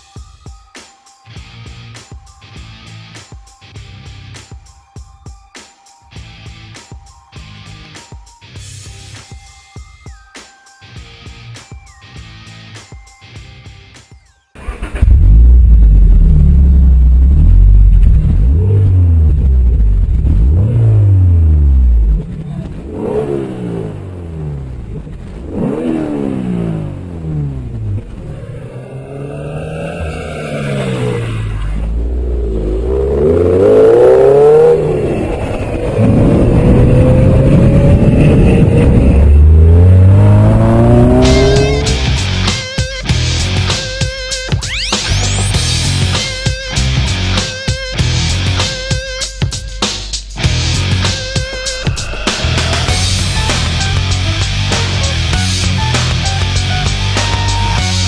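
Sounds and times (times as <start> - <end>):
car engine revving: 14.6 - 43.8, 50.4 - 58.0.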